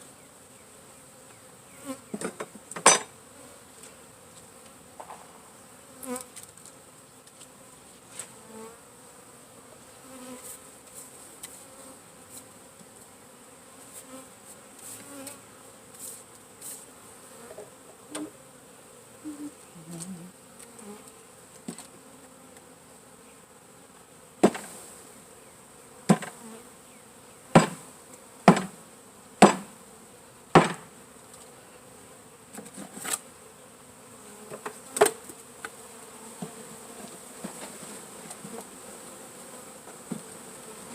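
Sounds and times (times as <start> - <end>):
honey bees buzzing: 0.0 - 40.9
loud sharp knocks: 27.6 - 27.8, 28.5 - 28.7, 29.4 - 29.7, 30.5 - 30.9.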